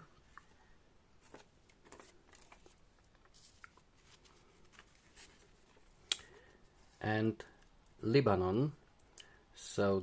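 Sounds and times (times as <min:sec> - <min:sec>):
banknotes rustling: 0:01.2 - 0:06.7.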